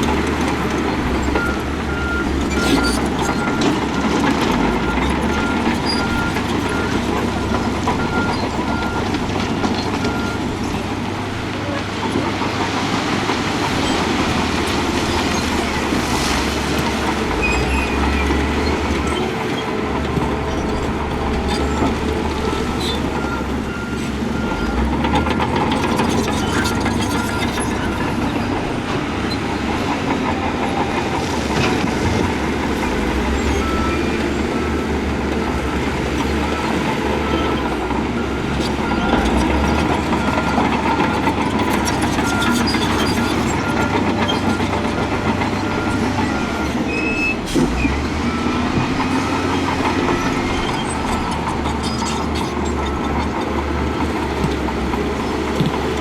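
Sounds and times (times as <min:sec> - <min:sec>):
diesel engine of heavy machinery: 0:00.0 - 0:56.0
reversing alarm beeping: 0:01.3 - 0:10.5.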